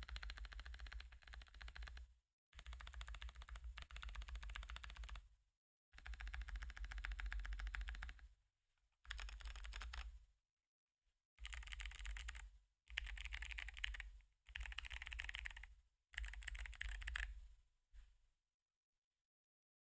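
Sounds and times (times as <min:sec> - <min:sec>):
fast typing on clicky keyboard: 0:00.0 - 0:02.0, 0:02.6 - 0:05.2, 0:06.0 - 0:08.2, 0:09.1 - 0:10.1, 0:11.4 - 0:17.3.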